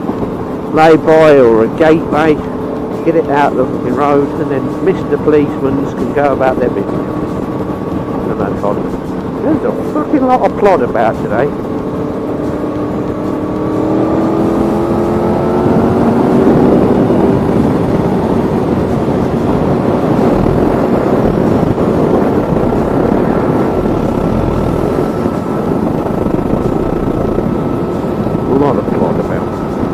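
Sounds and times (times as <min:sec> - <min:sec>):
motorcycle engine accelerating: 0:00.0 - 0:29.9
wind and road noise: 0:00.0 - 0:29.9.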